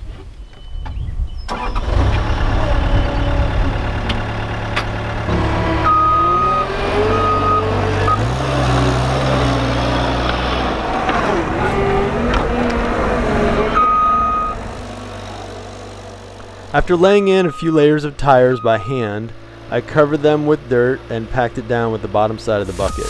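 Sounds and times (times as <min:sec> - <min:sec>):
diesel engine under load: 0:00.7 - 0:23.0
high steady tone: 0:22.6 - 0:23.0.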